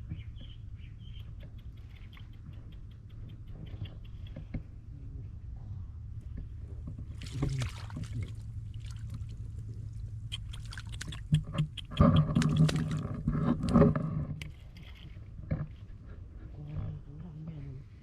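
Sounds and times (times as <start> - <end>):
water splashing and sloshing: 6.3 - 15.9.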